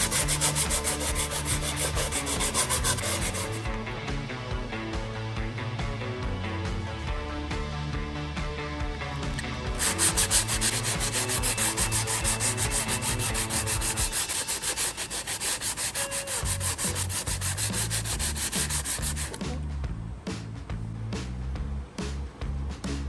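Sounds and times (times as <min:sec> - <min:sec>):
sandpaper rubbing on plastic: 0:00.0 - 0:03.7, 0:09.8 - 0:19.4.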